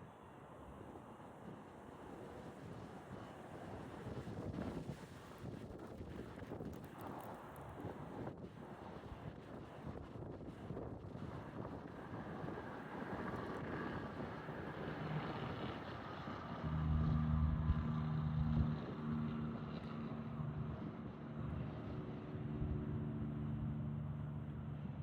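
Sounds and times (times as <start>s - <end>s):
low engine drone: 16.4s - 25.0s.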